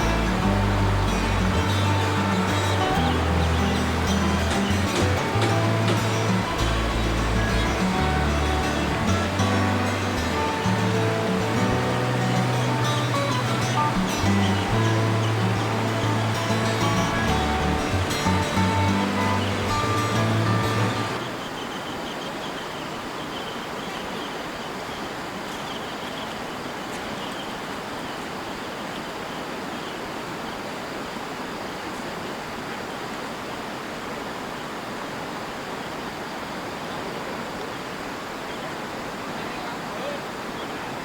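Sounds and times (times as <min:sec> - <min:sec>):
background music: 0:00.0 - 0:21.3
river water rushing: 0:00.0 - 0:41.0.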